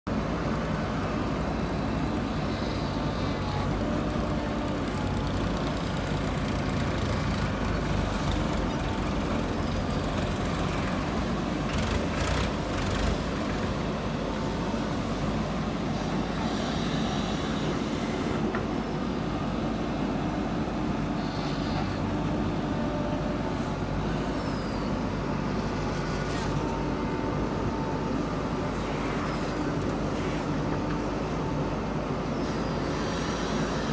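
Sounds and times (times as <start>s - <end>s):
diesel engine running under load: 0.1s - 33.9s.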